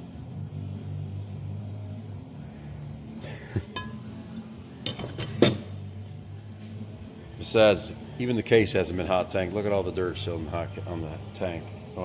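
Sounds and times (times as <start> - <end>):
metallic clink ringing: 3.7 - 5.7.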